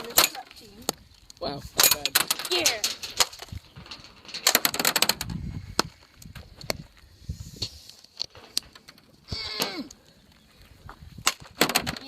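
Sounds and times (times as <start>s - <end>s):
thrown rocks clacking: 0.0s - 6.8s, 10.8s - 12.0s.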